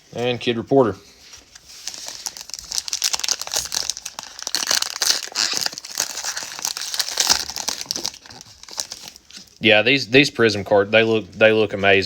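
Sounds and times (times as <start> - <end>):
foil wrappers crinkling: 1.2 - 9.6.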